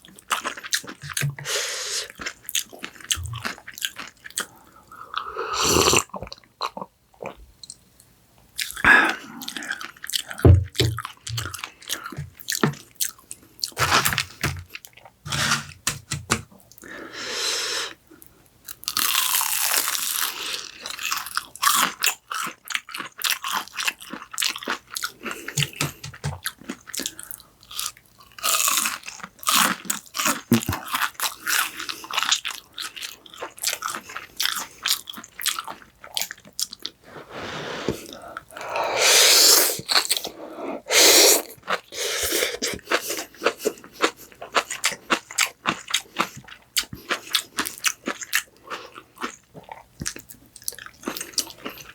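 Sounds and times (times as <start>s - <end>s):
crunching and chewing fried food: 0.0s - 7.8s, 8.6s - 15.7s, 18.1s - 37.0s, 39.8s - 40.4s, 41.3s - 51.9s.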